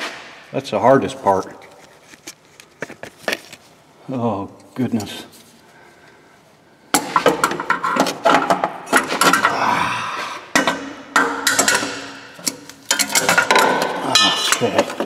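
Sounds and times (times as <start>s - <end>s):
hand tools clinking on metal: 10.6s - 15.0s.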